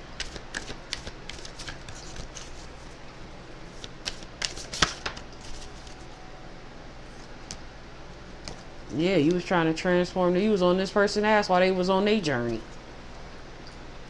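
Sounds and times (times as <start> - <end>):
cards being shuffled: 0.2 - 3.0, 3.7 - 6.1.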